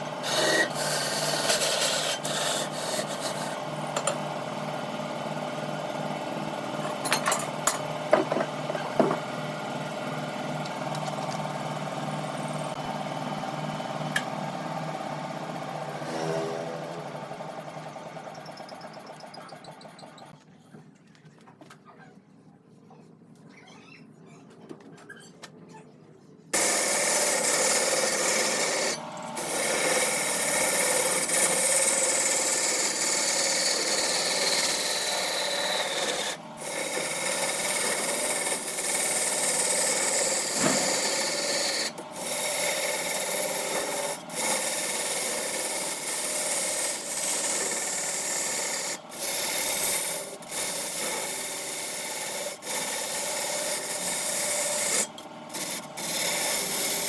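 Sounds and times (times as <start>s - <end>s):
wood lathe scraping rasp: 0.0s - 3.7s, 26.6s - 57.0s.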